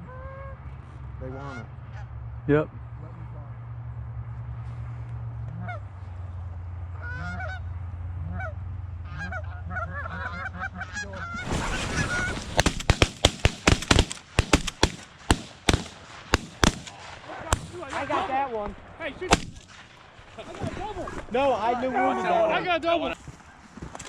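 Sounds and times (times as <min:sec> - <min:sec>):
geese honking: 0:00.0 - 0:02.1, 0:05.4 - 0:06.3, 0:06.9 - 0:19.6
shotgun blasts: 0:11.4 - 0:18.2, 0:19.2 - 0:20.4.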